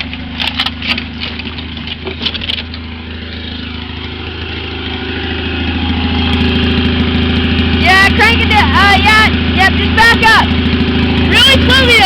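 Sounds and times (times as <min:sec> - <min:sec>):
sharp clicks and knocks: 0:00.0 - 0:02.9
riding lawn mower engine running: 0:00.0 - 0:12.0.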